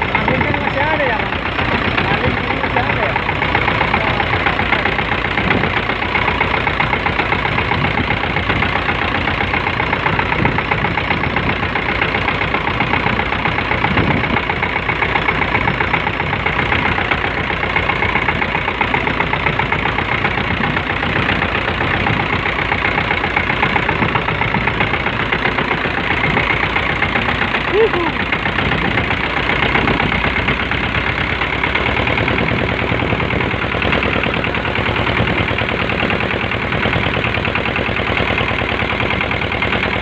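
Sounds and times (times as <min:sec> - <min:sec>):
boat engine chugging: 0:00.0 - 0:40.0.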